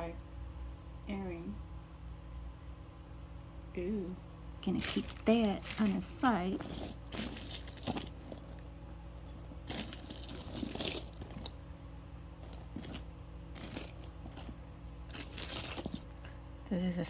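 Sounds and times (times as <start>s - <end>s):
steady low hum: 0.0s - 17.0s
metal jewelry clinking: 4.6s - 11.6s, 12.4s - 16.3s.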